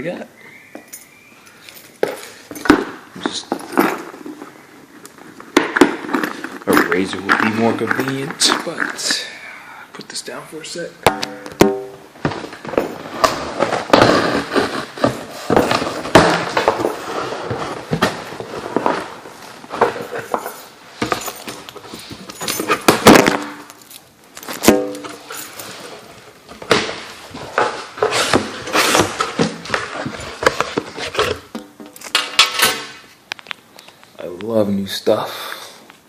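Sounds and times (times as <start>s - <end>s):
cardboard rustling and scraping: 12.2s - 23.7s, 24.4s - 31.6s
packing tape ripping: 12.5s - 19.2s.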